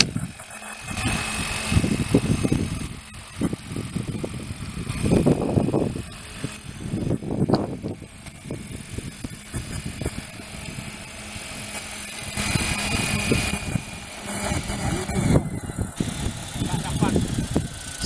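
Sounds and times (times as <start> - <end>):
model helicopter rotor hum: 0.0 - 18.0
gusting low rumble: 12.3 - 18.0.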